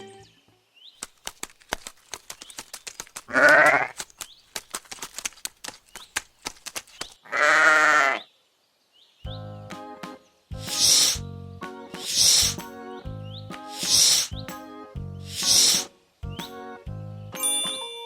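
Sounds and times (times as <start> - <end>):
sheep bleating: 3.3 - 3.9, 7.3 - 8.2.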